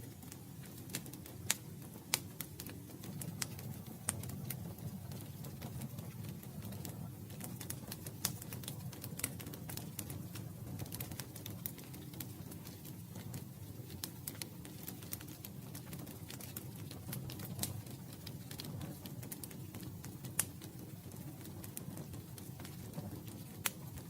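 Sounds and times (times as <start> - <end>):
campfire crackling and popping: 0.0 - 24.0
low rumble of burning wood: 0.0 - 24.0.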